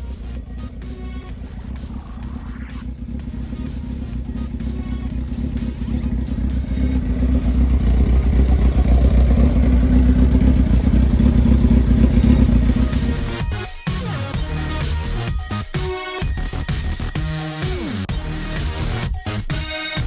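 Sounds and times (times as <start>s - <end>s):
motorcycle engine exhaust note: 0.0s - 13.6s.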